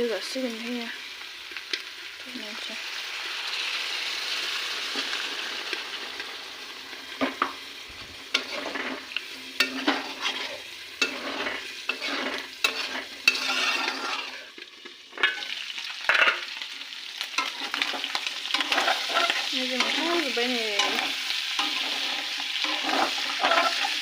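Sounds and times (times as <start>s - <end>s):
food sizzling in a pan: 0.0s - 24.0s
spoon scraping and knocking pan: 7.2s - 7.6s, 8.3s - 16.7s, 17.3s - 24.0s.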